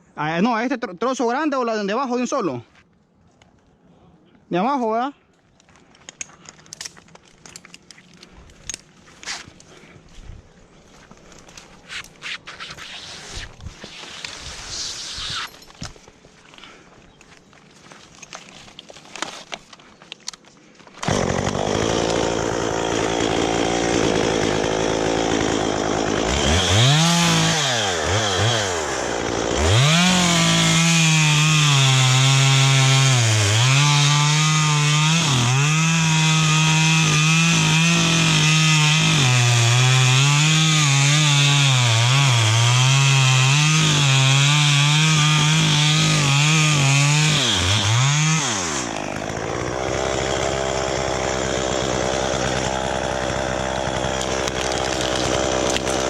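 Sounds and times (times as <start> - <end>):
chainsaw cutting wood: 12.0 - 15.9, 21.0 - 56.0
chainsaw idling and revving: 21.0 - 56.0.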